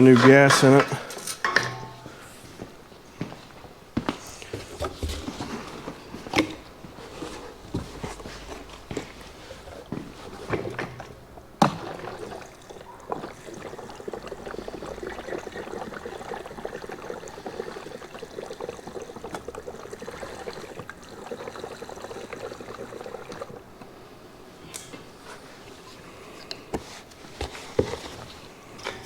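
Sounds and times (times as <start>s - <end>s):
fuel pouring into a tank: 4.4s - 23.8s.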